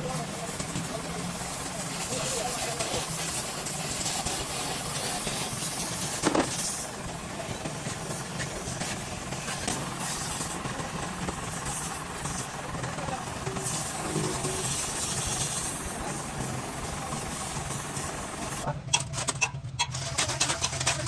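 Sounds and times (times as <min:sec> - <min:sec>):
mechanical hiss: 0:11.3 - 0:18.6
low hum: 0:13.3 - 0:17.1.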